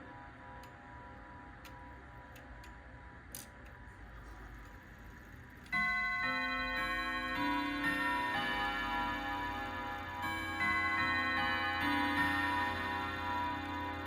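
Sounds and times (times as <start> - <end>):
clock ticking: 4.2 - 14.0
clock chime melody: 4.4 - 14.0.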